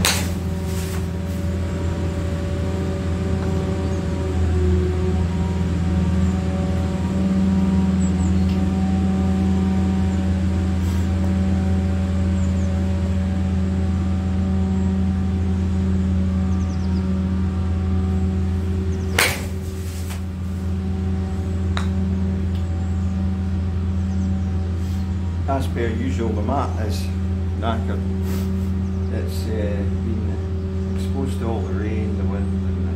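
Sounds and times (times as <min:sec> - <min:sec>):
golf club striking ball: 0:00.0 - 0:01.4, 0:18.8 - 0:20.5, 0:21.7 - 0:22.7
low hum: 0:00.0 - 0:32.9.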